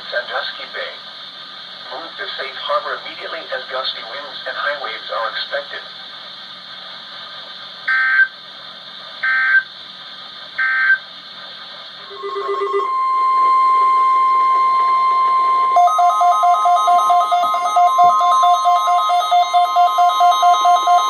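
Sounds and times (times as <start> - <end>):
steady warning alarm tone: 7.9 - 8.3, 9.2 - 9.7, 10.6 - 11.0, 12.0 - 21.0
alternating two-note beeping: 12.0 - 21.0.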